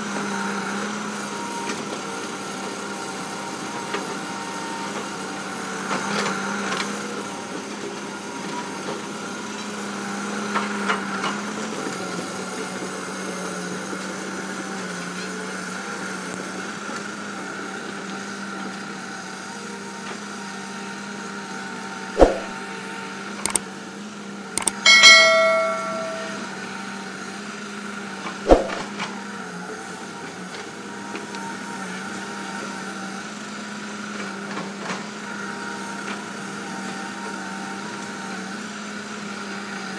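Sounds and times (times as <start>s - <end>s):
sharp metallic knocks: 22.2s - 22.5s, 24.6s - 26.5s
ringing metal clang: 24.6s - 26.6s, 28.5s - 28.8s.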